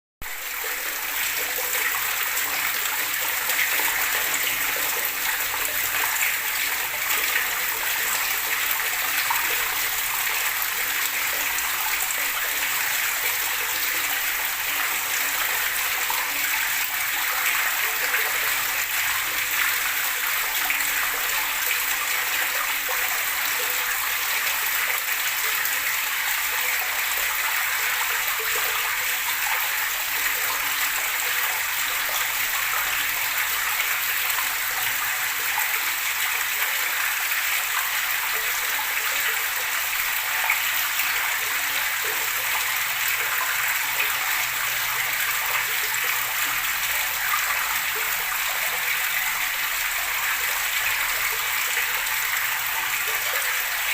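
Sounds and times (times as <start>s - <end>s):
gurgling running water: 0.2s - 53.9s.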